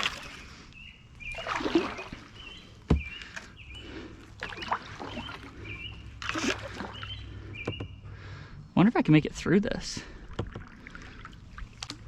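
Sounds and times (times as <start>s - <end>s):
paddle splashing through water: 0.0s - 7.7s, 10.2s - 12.0s.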